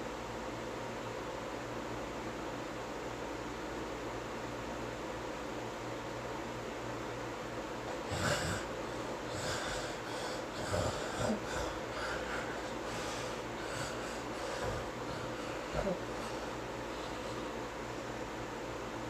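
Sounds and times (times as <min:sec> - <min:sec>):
man snoring: 0:07.9 - 0:17.7.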